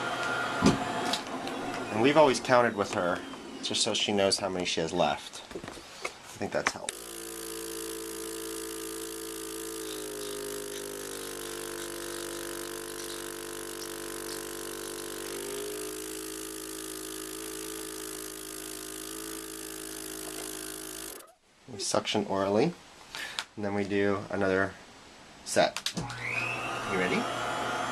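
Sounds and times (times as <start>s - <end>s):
suction pump motor humming: 0.0s - 3.8s, 6.9s - 21.3s, 26.0s - 27.9s.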